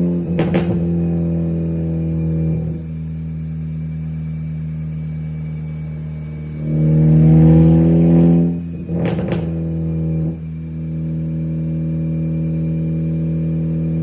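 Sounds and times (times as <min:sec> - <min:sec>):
exhaust cracks: 0:00.0 - 0:02.9, 0:07.5 - 0:10.4
car engine idling and revving: 0:00.0 - 0:14.0.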